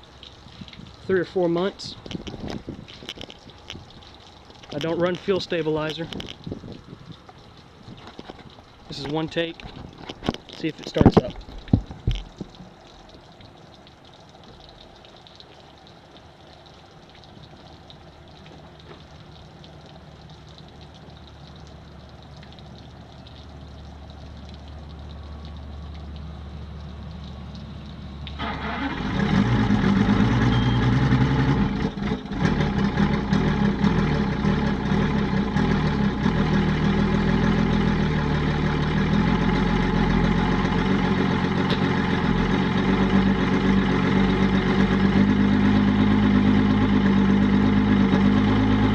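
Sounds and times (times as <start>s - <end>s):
outboard engine idling: 28.1s - 48.9s.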